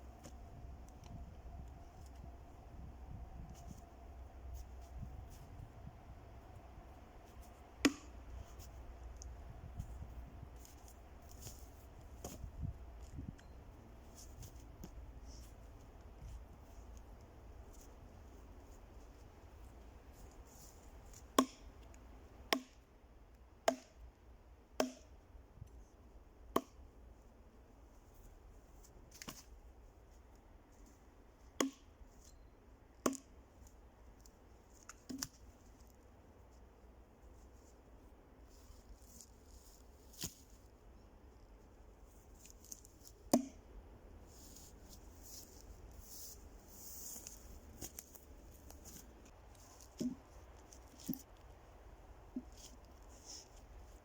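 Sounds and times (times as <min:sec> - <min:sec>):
axe chopping wood: 0:07.8 - 0:08.2, 0:21.1 - 0:21.8, 0:22.5 - 0:22.8, 0:23.6 - 0:24.0, 0:24.8 - 0:25.2, 0:26.5 - 0:26.8, 0:31.6 - 0:31.9, 0:33.0 - 0:33.3, 0:43.3 - 0:43.6, 0:49.8 - 0:50.2.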